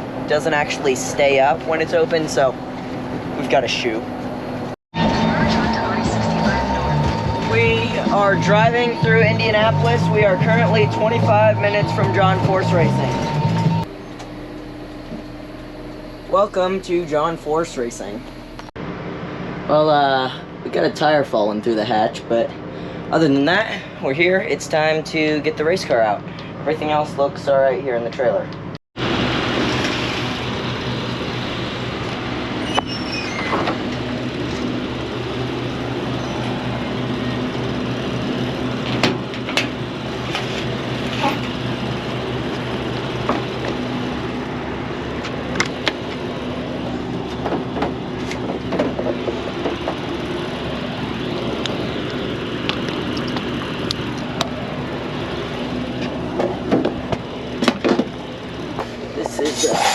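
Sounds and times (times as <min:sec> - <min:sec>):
mechanical drone with low hum: 0:00.0 - 0:59.9.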